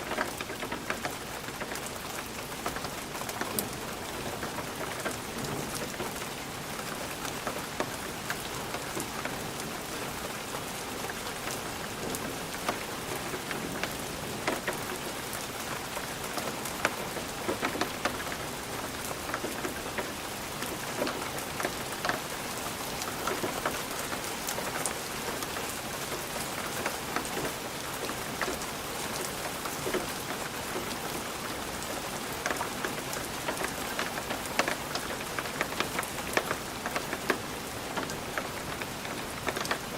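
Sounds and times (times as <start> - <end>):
raindrops tapping on glass: 16.2 - 22.3, 26.8 - 39.9.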